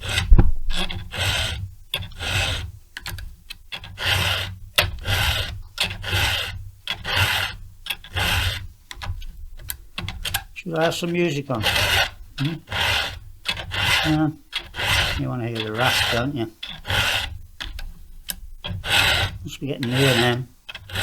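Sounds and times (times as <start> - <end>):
file sharpening chainsaw chain: 0.0 - 2.7, 3.7 - 8.6, 10.2 - 17.9, 18.6 - 21.0.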